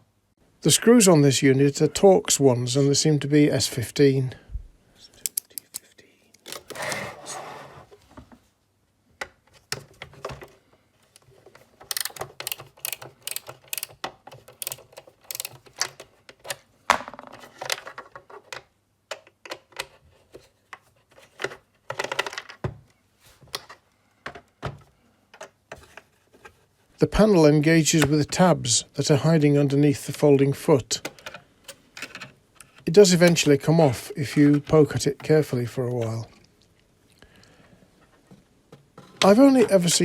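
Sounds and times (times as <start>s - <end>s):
screwdriver and plastic parts clicking: 5.2s - 6.9s, 11.1s - 16.6s.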